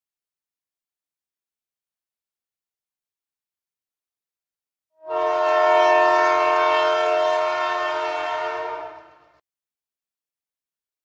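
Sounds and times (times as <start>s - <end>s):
train horn blast: 5.0s - 9.4s.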